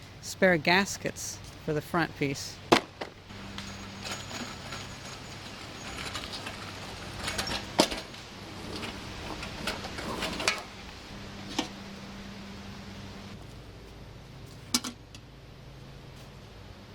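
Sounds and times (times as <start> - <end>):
low electrical hum: 0.0 - 16.9.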